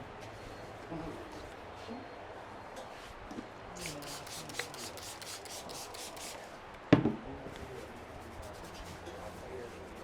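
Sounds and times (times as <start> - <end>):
massage strokes rubbing skin: 3.8 - 6.4.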